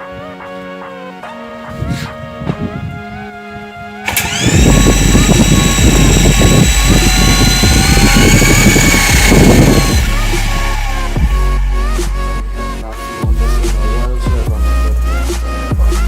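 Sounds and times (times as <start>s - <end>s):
wind buffeting microphone: 0.0s - 14.7s
rc helicopter motor whine: 4.0s - 11.6s.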